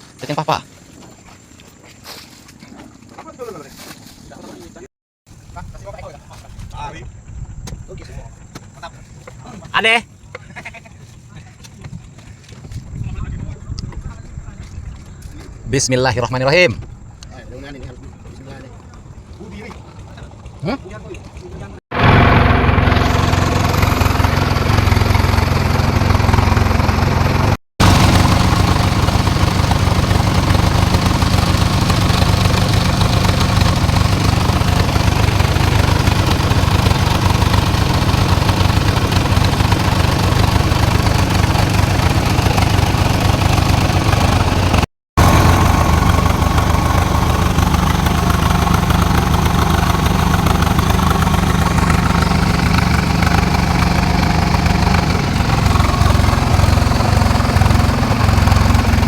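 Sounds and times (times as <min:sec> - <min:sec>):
small engine running: 0:17.4 - 0:59.0.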